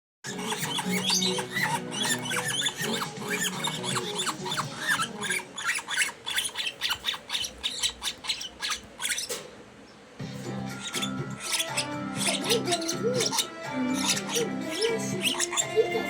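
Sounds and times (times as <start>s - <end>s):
bird chick chirping: 0.2s - 16.0s
background music: 10.2s - 16.0s.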